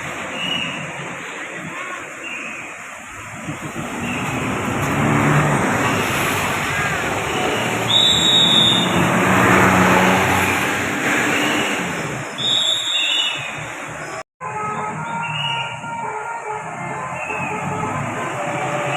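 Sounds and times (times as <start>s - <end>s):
bus driving past: 2.8s - 14.2s, 16.6s - 18.9s
short high-pitched whistle: 7.9s - 9.0s, 12.4s - 13.5s.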